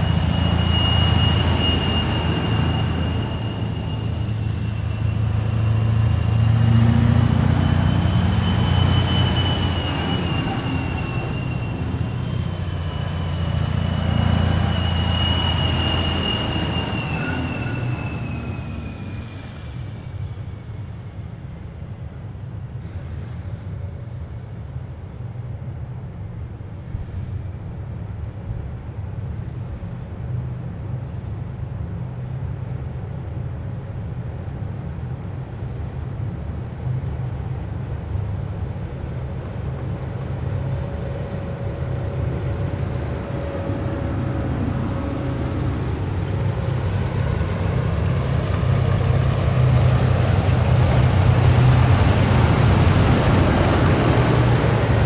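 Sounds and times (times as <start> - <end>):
high whine dropping in pitch: 0.0 - 19.4, 39.1 - 55.0
military vehicles engine rumble: 0.0 - 20.1, 29.7 - 55.0.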